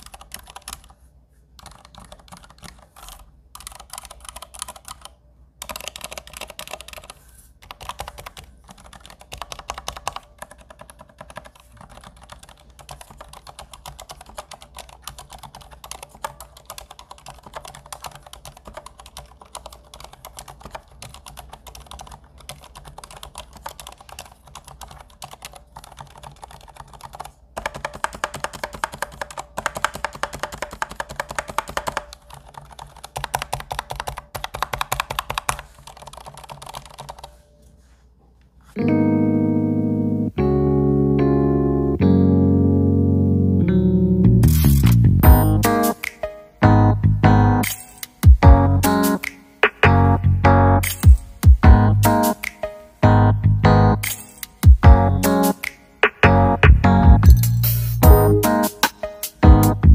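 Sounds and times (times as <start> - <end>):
fast typing on mechanical keyboard: 0.0 - 1.0, 1.6 - 37.4.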